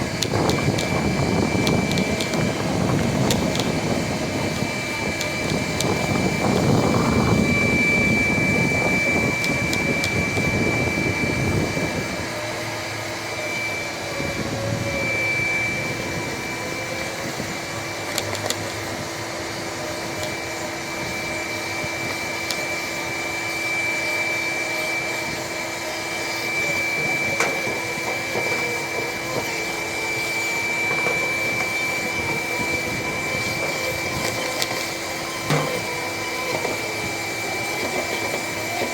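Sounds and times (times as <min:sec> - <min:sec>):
rushing air rumble: 0:00.0 - 0:18.1
vacuum motor whining: 0:00.0 - 0:38.9.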